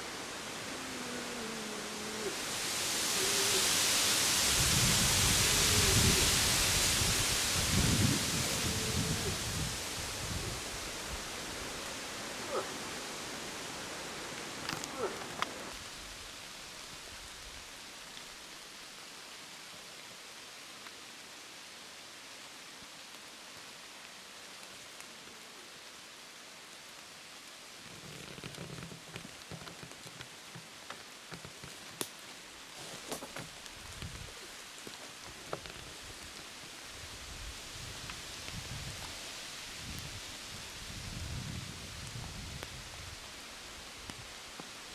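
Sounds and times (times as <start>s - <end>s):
light rustling: 0.0s - 15.9s
steady rain falling: 0.0s - 44.9s.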